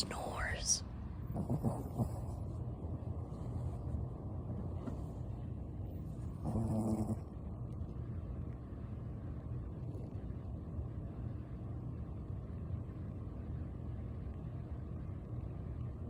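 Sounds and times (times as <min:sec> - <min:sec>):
dog snoring: 0:01.2 - 0:02.6, 0:06.2 - 0:07.4, 0:09.8 - 0:10.4.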